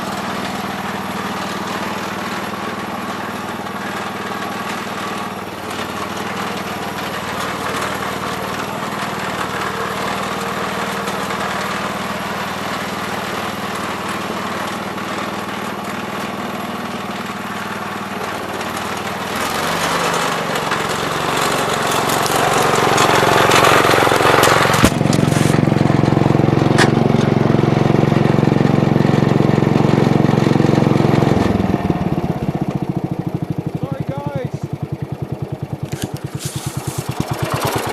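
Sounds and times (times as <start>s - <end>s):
walk-behind tractor engine running: 0.0s - 37.9s.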